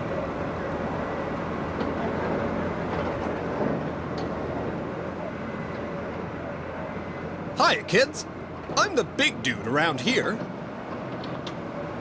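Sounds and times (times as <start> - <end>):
heavy vehicle engine rumbling: 0.0 - 11.2.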